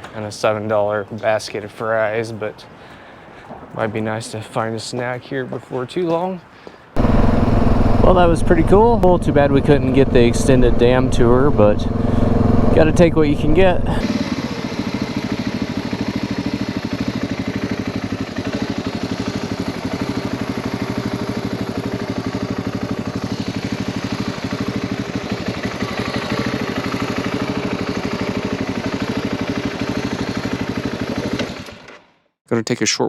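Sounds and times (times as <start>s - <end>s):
motorcycle engine running steadily: 7.0s - 31.9s.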